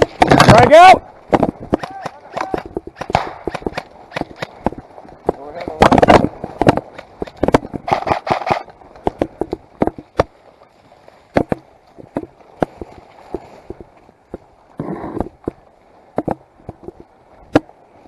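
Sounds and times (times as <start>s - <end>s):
airsoft gun shots: 1.4s - 4.5s.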